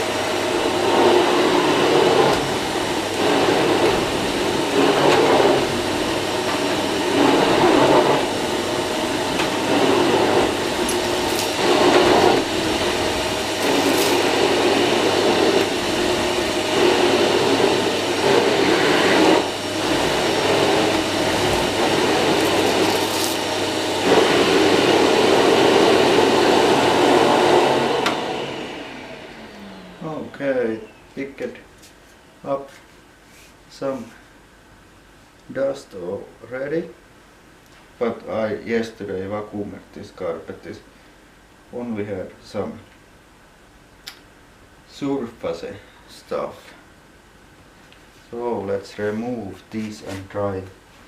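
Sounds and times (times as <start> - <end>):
vacuum cleaner on carpet: 0.0 - 31.6.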